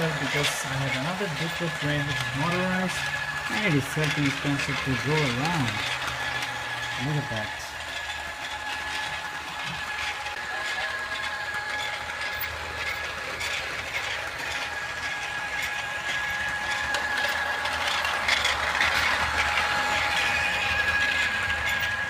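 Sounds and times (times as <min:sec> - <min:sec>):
toy train motor whine: 0:00.0 - 0:22.0
wheels clicking on track: 0:00.0 - 0:22.0.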